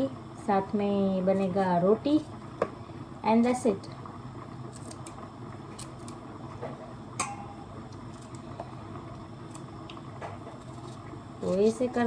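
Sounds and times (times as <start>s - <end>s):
low background hum: 0.0s - 12.0s.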